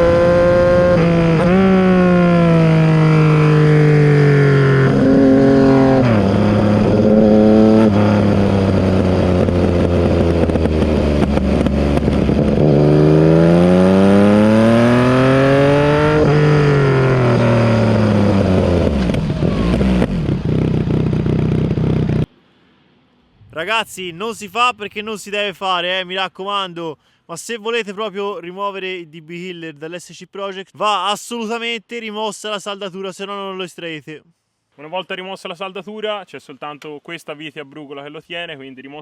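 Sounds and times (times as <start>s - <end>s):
motorcycle engine accelerating: 0.0s - 22.3s.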